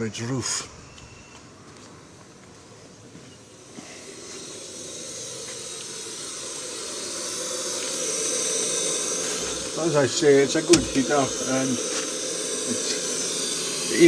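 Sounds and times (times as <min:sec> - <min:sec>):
kerosene burner hissing: 0:03.4 - 0:14.0.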